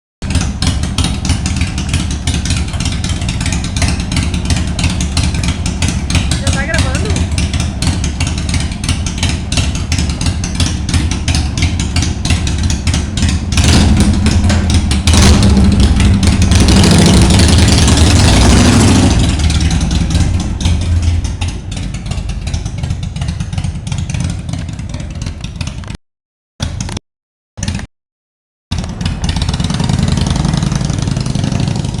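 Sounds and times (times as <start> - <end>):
motorcycle engine running loud: 0.2 - 26.0, 28.7 - 32.0.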